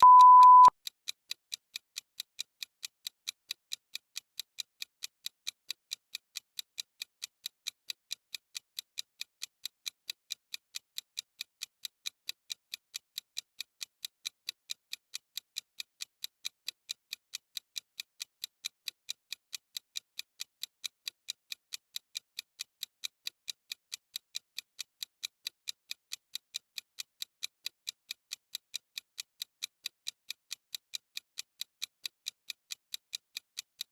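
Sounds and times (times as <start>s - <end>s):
short beep: 0.0s - 0.7s.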